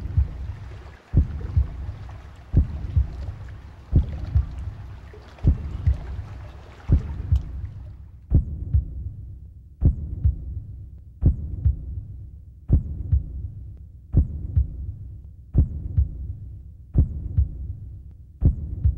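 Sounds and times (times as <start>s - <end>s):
heartbeat-like double thumps: 0.0s - 6.3s, 6.9s - 17.8s, 18.4s - 18.9s
low hum: 0.0s - 8.5s.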